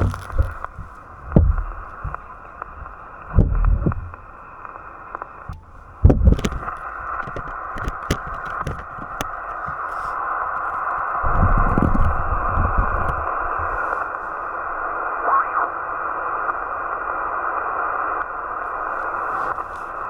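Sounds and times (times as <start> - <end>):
wind rumbling on microphone: 0.0 - 15.2
radio speaker hissing band noise: 0.0 - 20.0
static crackles: 0.0 - 20.0.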